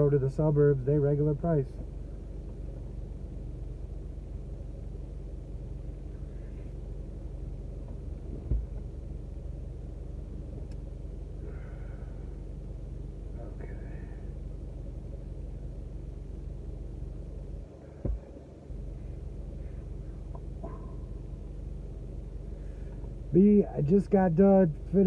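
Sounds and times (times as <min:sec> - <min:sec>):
car engine idling: 0:00.0 - 0:25.0
thump: 0:08.4 - 0:08.8, 0:18.0 - 0:18.4.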